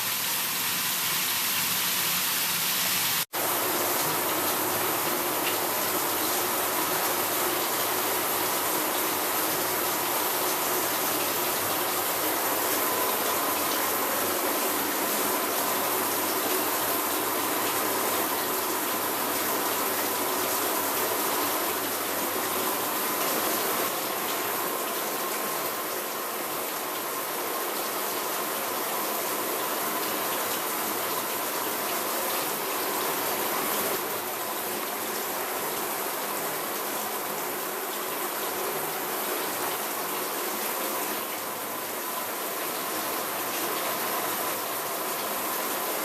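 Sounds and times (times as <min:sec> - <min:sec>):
shower head spraying water: 0:00.0 - 0:23.9.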